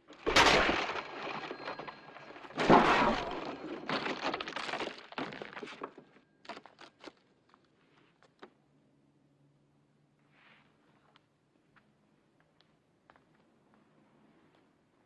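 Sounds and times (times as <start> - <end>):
falling debris clattering: 0.0 - 6.1
loud smashing crashes: 0.2 - 5.4.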